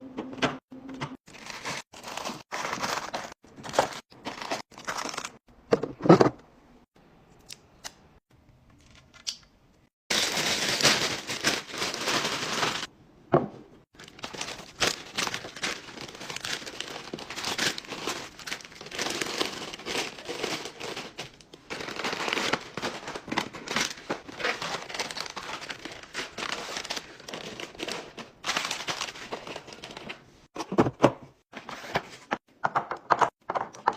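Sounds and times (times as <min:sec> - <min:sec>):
crinkling and rustling: 0:00.9 - 0:06.4, 0:10.1 - 0:12.9, 0:13.9 - 0:32.4.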